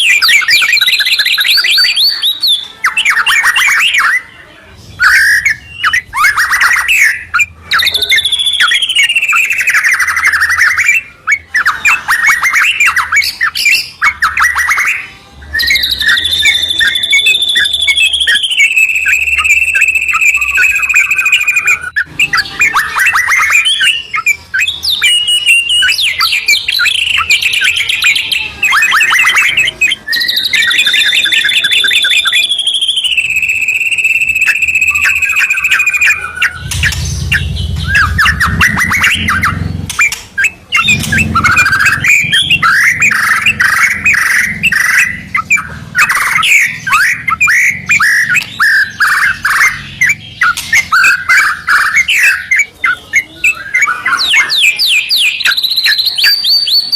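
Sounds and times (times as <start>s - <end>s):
birds singing loudly: 0.0s - 56.9s
low rumble: 36.6s - 40.0s.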